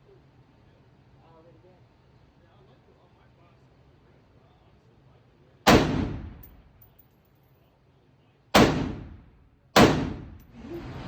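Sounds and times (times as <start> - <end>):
rifle shots echoing: 5.7 - 6.6, 8.6 - 10.4.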